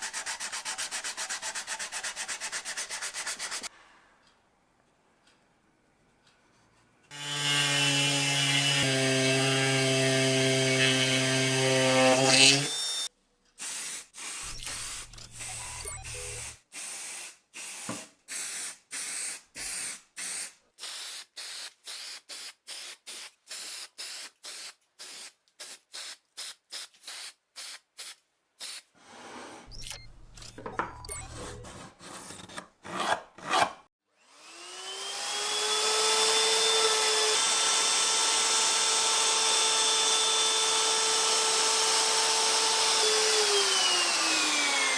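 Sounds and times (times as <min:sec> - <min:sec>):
motor spinning up: 0:14.4 - 0:16.6
small electric power tool running: 0:34.2 - 0:44.9.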